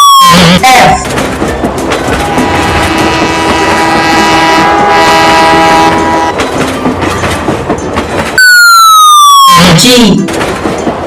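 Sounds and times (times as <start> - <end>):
wheels clattering on rail joints: 0.6 - 8.6, 9.8 - 11.0
train horn: 2.1 - 6.4, 8.4 - 9.6.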